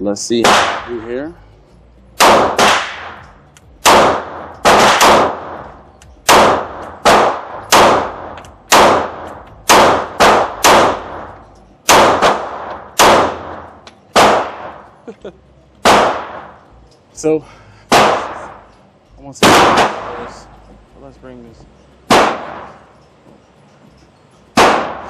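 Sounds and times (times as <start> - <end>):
pistol shots: 0.4 - 1.0, 2.2 - 14.9, 15.8 - 16.6, 17.9 - 18.7, 19.4 - 20.3, 22.1 - 22.9, 24.6 - 25.0.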